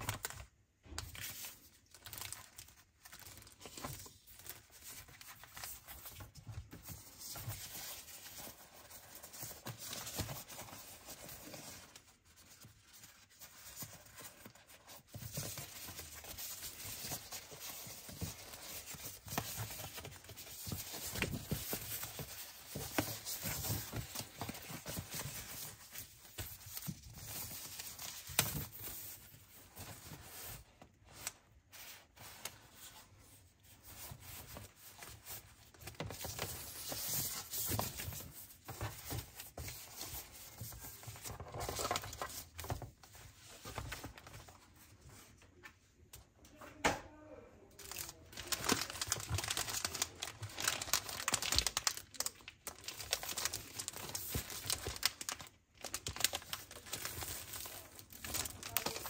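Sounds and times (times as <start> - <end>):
wrapping rustling and tearing: 0.0 - 45.3, 47.8 - 59.0.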